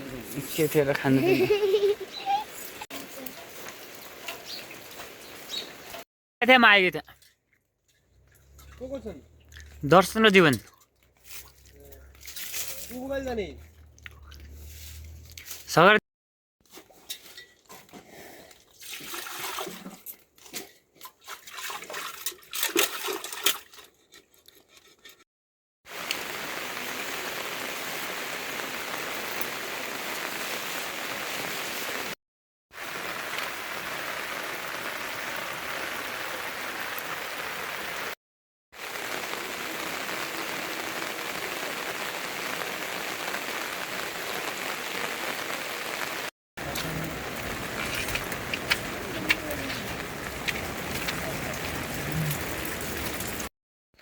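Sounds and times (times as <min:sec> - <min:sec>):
water rushing: 0:32.8 - 0:38.2, 0:38.8 - 0:53.5.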